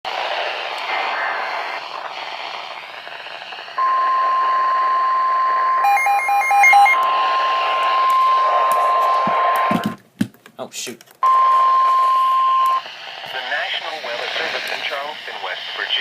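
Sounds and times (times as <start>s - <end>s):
weather radio hiss: 0.1s - 5.0s, 11.8s - 16.0s
single-pitch warning alarm tone: 3.8s - 9.9s, 11.2s - 12.8s.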